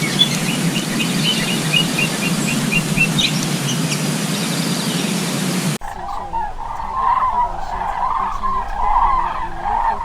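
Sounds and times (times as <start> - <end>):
small bird chirping: 0.0 - 10.0
steady background noise: 0.0 - 10.0.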